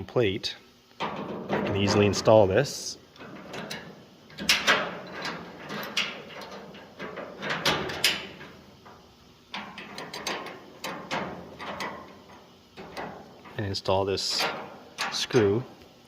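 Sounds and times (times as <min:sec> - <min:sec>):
metal parts clicking and scraping: 0:03.2 - 0:15.7.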